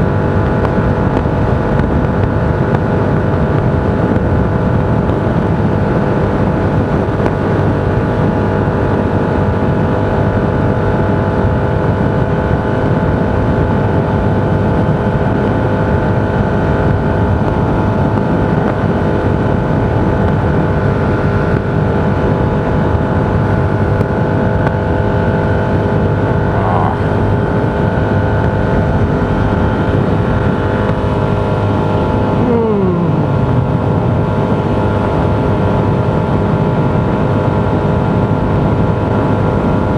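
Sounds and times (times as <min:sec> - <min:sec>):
vehicle road and wind noise: 0:00.0 - 0:39.9
tone falling in pitch: 0:32.4 - 0:33.6.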